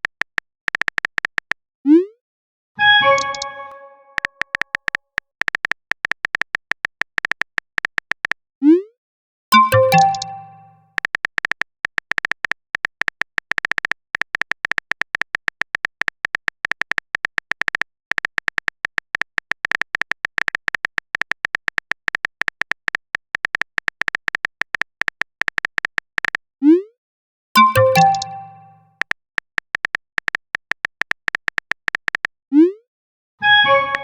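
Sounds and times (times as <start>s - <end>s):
phone keyboard typing clicks: 0.0s - 1.6s, 3.1s - 8.4s, 9.5s - 26.4s, 27.6s - 32.4s
notification chime: 2.9s - 4.2s, 9.5s - 10.8s, 27.6s - 28.9s.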